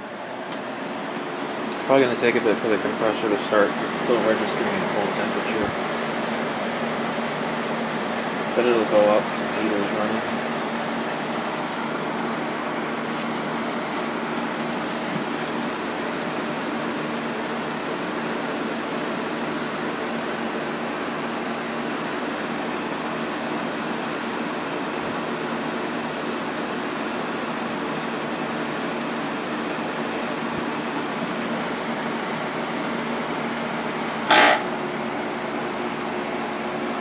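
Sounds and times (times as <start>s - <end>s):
air conditioner fan hum: 0.0s - 37.0s
compressor kicking on jolt: 34.1s - 34.9s.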